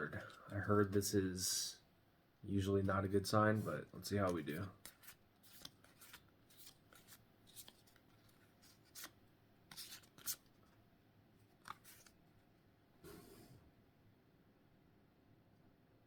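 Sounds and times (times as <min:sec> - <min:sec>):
cards swiping against cards: 0:04.2 - 0:10.6, 0:11.6 - 0:12.2.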